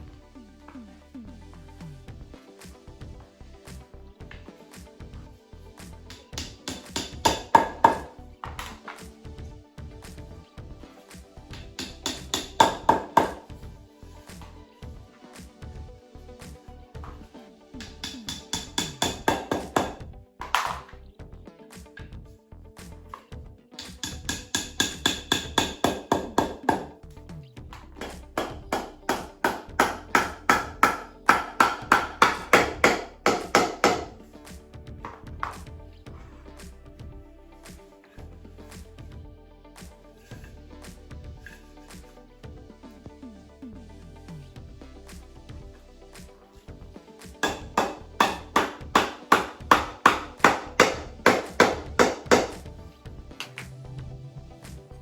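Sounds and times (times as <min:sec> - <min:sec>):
background music: 0:00.0 - 0:55.0
hammer blows on wood: 0:47.4 - 0:52.7.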